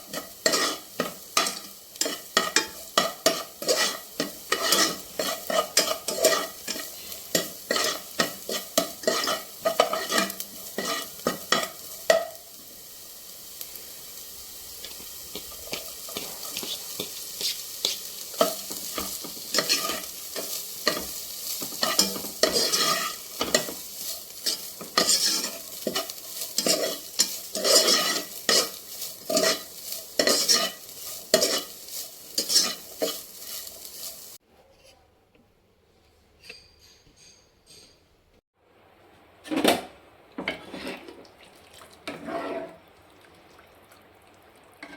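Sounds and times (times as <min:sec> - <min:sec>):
spoon scraping in a pan: 0:00.0 - 0:12.6, 0:14.8 - 0:35.0, 0:36.4 - 0:38.1, 0:40.4 - 0:41.3, 0:42.0 - 0:42.9
food sizzling: 0:00.0 - 0:34.4.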